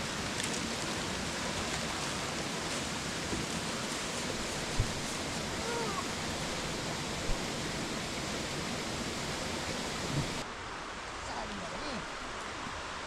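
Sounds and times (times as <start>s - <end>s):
waterfall rushing: 0.0s - 10.4s.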